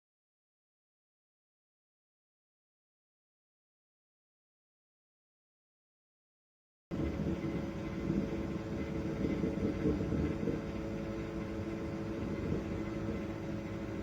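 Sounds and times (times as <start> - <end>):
microwave oven humming: 6.9 - 14.0.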